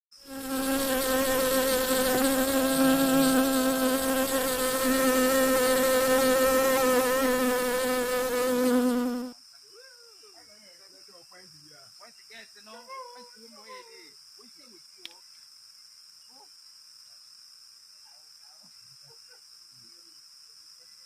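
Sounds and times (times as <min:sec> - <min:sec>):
bees buzzing: 0:00.2 - 0:09.3.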